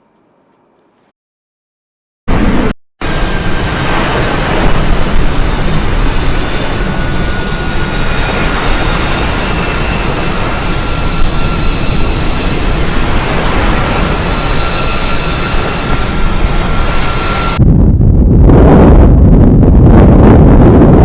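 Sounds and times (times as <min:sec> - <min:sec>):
jet engine roar with whine: 0:02.3 - 0:21.0
wind noise on microphone: 0:02.3 - 0:21.0.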